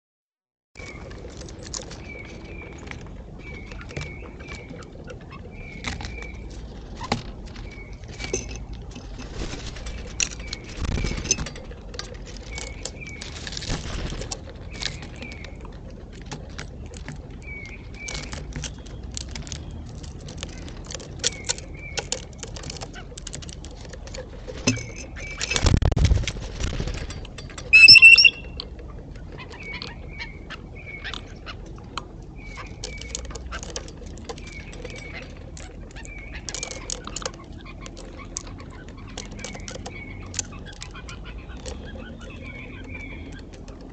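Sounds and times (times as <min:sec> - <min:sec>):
wings flapping: 0:09.0 - 0:12.3, 0:13.2 - 0:15.2, 0:25.4 - 0:28.5
blue jay call: 0:27.7 - 0:28.6
short bird chirps: 0:27.8 - 0:28.5.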